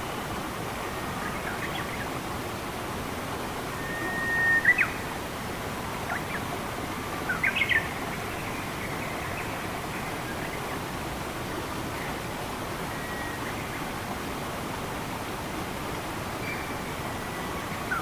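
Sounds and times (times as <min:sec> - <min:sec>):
running water rushing: 0:00.0 - 0:18.0
songbirds calling: 0:03.6 - 0:05.2, 0:06.0 - 0:10.9.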